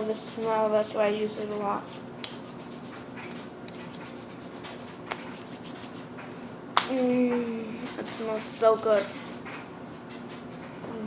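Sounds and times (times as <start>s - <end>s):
hands rubbing wet paper: 1.4s - 6.2s.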